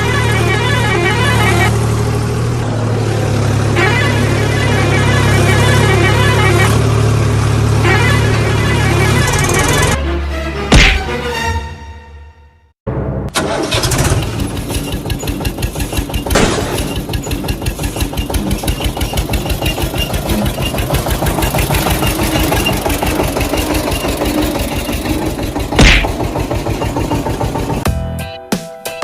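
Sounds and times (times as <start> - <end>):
engine chugging: 0.0 - 10.0, 13.3 - 27.9
engine bangs: 13.3 - 27.8.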